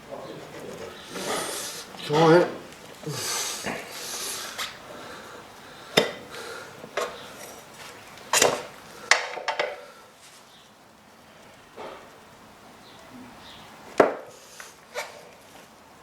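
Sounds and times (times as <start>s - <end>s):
tyre scraping: 0.1s - 4.8s.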